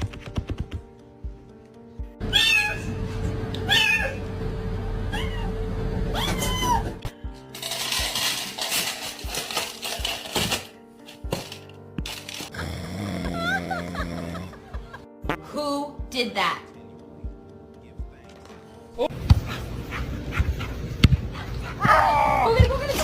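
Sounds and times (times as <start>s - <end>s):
background music: 0.0s - 23.0s
cat meowing: 2.3s - 2.9s, 3.6s - 4.2s, 5.1s - 6.9s.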